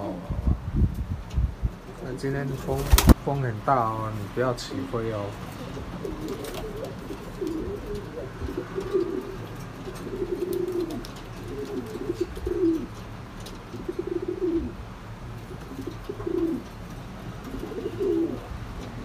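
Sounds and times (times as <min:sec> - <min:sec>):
pigeons cooing: 0:05.1 - 0:19.0.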